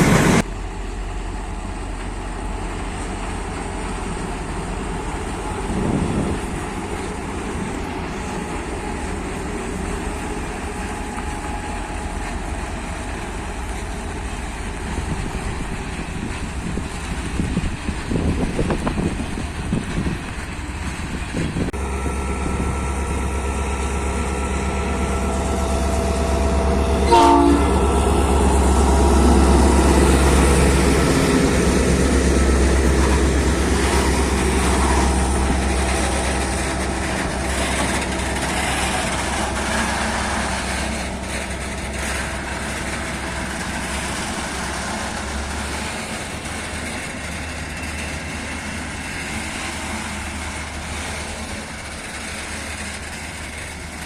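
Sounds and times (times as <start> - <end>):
locomotive low rumble: 0.0 - 54.0
railcars rolling on rails: 0.0 - 54.0
train horn chord: 21.8 - 31.8.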